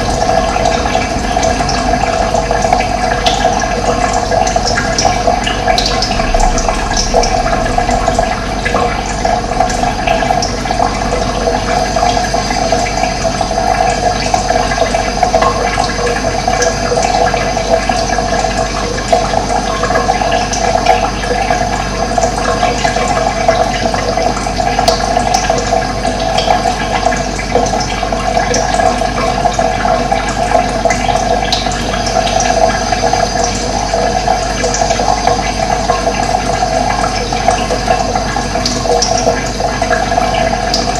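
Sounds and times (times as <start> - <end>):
water rushing: 0.0 - 24.8.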